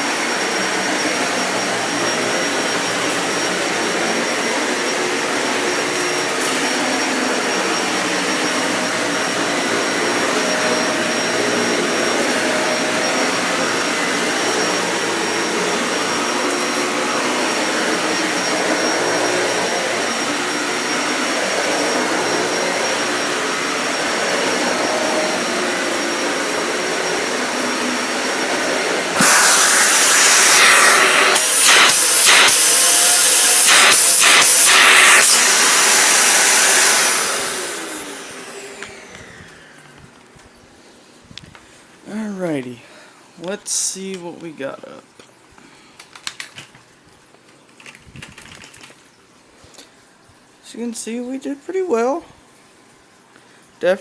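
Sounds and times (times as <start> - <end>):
loud rushing hiss: 0.0 - 39.4
vacuum cleaner running: 0.0 - 41.2.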